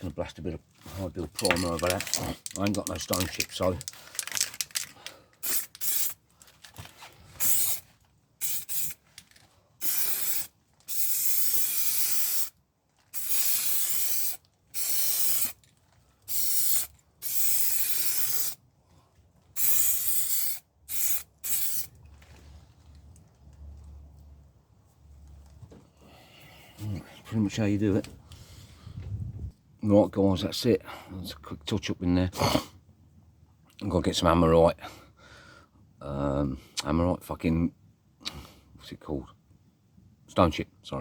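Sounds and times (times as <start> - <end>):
spray gun hissing: 5.4 - 6.2, 7.4 - 7.8, 8.4 - 9.0, 9.8 - 12.5, 13.2 - 15.6, 16.3 - 18.6, 19.6 - 21.9.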